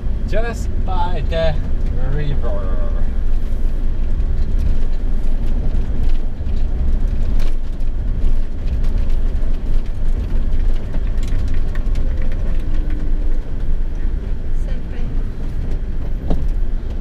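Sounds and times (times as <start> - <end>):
engine and tyres rumbling: 0.0 - 17.0
knocks and rattles: 4.0 - 17.0.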